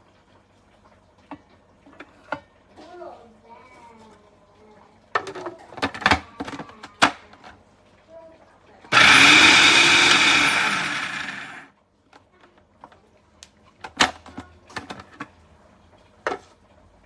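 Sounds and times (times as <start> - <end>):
food processor motor whirring: 8.9 - 11.7
clicks and knocks of handling: 12.2 - 15.4.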